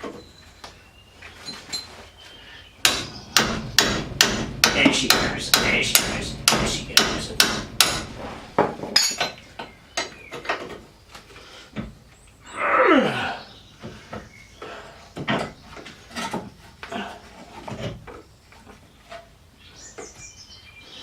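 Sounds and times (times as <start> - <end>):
hammer knocking on metal: 2.8 - 9.4.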